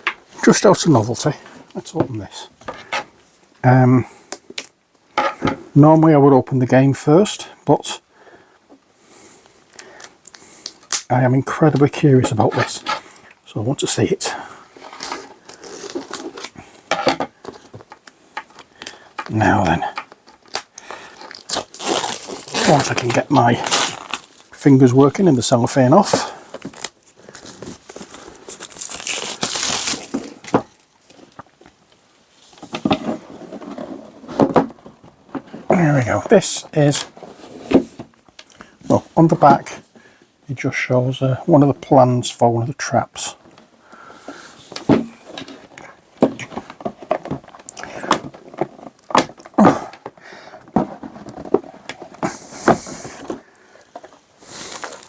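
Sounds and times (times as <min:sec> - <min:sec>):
cellophane crinkling and tearing: 0:14.8 - 0:16.6, 0:17.5 - 0:31.4, 0:50.9 - 0:55.0
cardboard box rustling and scraping: 0:32.6 - 0:35.7, 0:37.1 - 0:38.1, 0:44.4 - 0:53.4.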